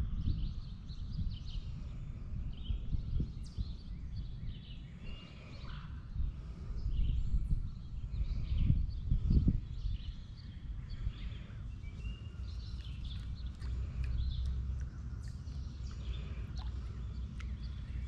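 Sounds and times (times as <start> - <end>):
birds chirping and calling: 3.5 - 18.0
low outdoor rumble: 10.5 - 18.0.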